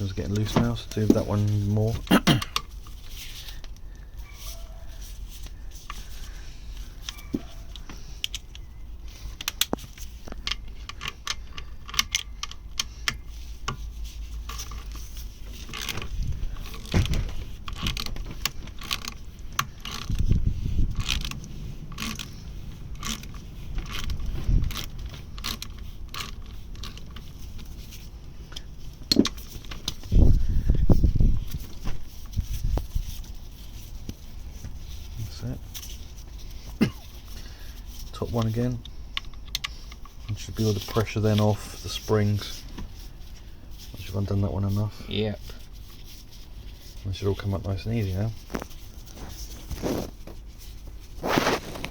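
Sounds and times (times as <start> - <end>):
dull handling thuds: 0.0 - 2.0, 15.4 - 18.8, 29.1 - 33.0.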